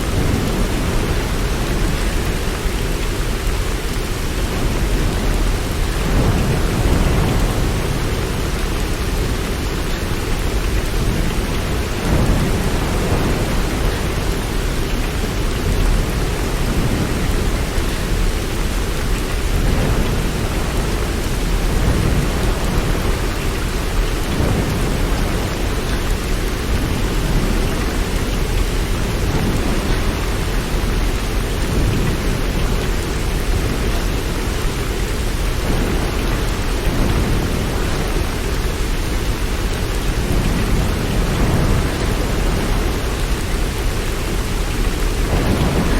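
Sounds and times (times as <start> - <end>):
steady rain: 0.0 - 45.9.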